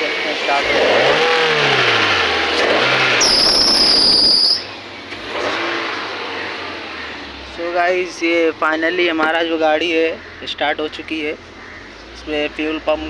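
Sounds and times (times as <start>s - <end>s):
high-pitched squeal: 0.0s - 8.5s
car engine running: 0.0s - 13.0s.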